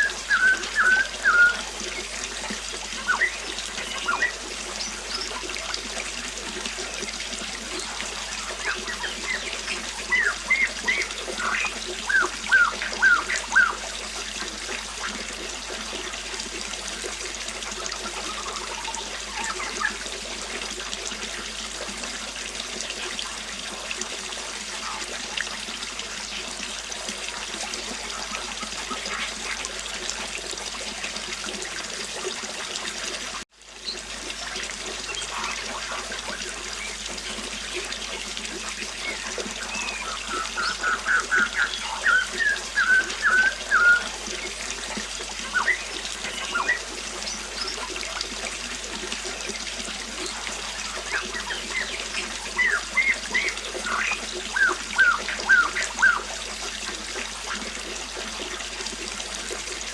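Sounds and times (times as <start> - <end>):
bird calls sliding downward: 0.0 - 2.1, 3.0 - 5.4, 8.2 - 13.8, 39.0 - 44.6, 45.4 - 46.8, 50.8 - 56.3
birdsong: 0.0 - 5.9, 6.7 - 15.1, 18.0 - 20.0, 24.7 - 26.5, 33.8 - 48.0, 49.2 - 57.6
river water rushing: 0.0 - 6.2, 7.2 - 13.8, 38.5 - 48.8, 50.2 - 56.2.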